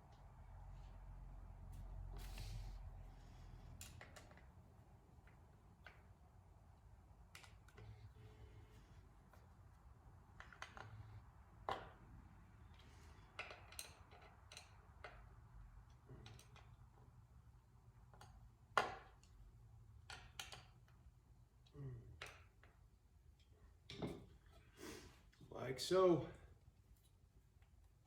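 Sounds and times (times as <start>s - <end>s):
small tools clicking and knocking: 3.7s - 4.6s, 10.3s - 12.0s, 12.6s - 17.1s, 17.9s - 24.7s.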